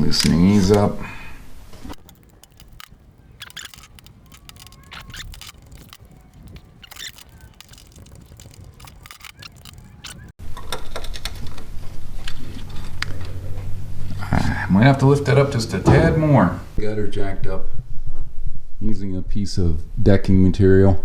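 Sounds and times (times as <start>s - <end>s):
hand tools clicking on bolts: 2.0s - 10.3s.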